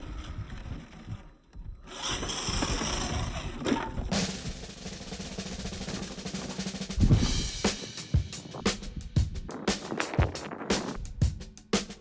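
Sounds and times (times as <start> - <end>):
drum-led music: 4.1 - 12.0.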